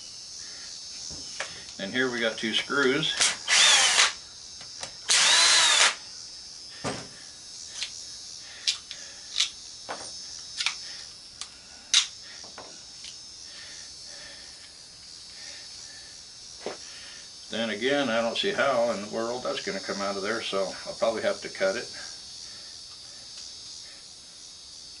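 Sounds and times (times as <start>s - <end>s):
power drill backing out screws: 3.2s - 4.2s, 5.1s - 6.0s.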